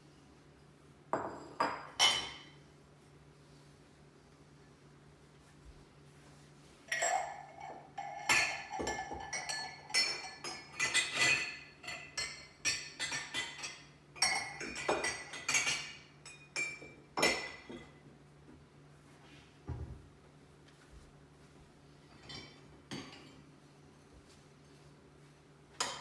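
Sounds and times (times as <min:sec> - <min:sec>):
dishes and glassware clinking: 0:01.1 - 0:02.6, 0:06.9 - 0:18.0, 0:22.0 - 0:24.1, 0:25.7 - 0:26.0.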